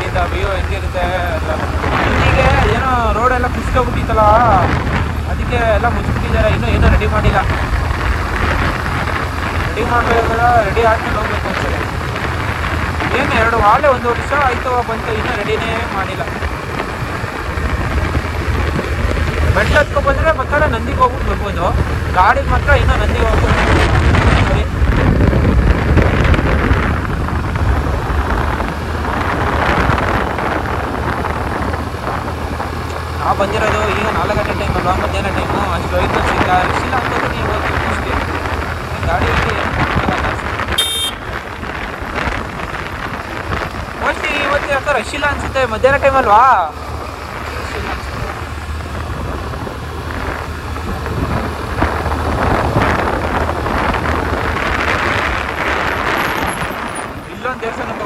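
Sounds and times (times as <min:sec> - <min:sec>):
wind rushing over microphone: 0:00.0 - 0:58.0
scooter engine running: 0:40.8 - 0:41.6.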